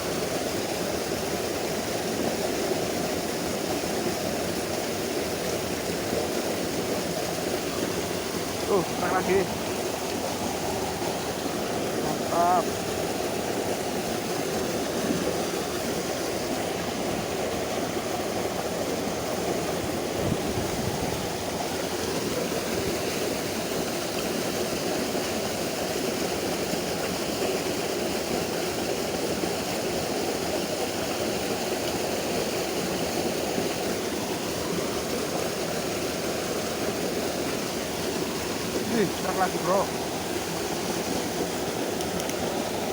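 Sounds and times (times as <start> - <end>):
stream water rushing: 0.0 - 42.9.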